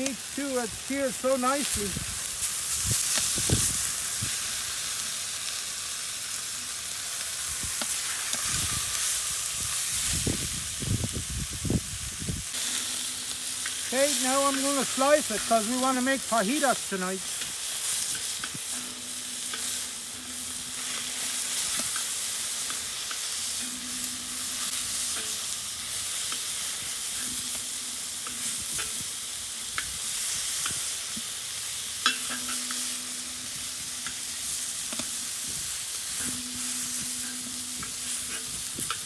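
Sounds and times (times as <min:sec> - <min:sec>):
steak sizzling in a frying pan: 0:00.0 - 0:39.0
utensils clicking against pan: 0:12.6 - 0:31.3, 0:32.0 - 0:39.0.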